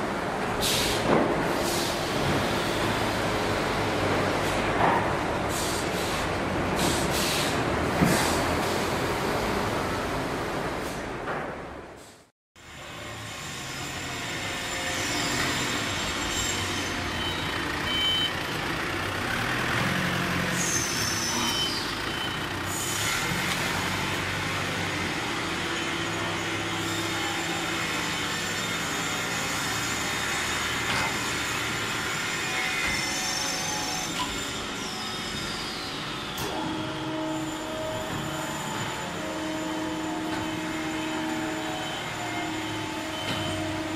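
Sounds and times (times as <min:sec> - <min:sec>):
machinery humming and din: 0:12.6 - 0:43.9
high squeals sliding down: 0:13.8 - 0:18.4, 0:19.9 - 0:24.1, 0:25.3 - 0:43.9.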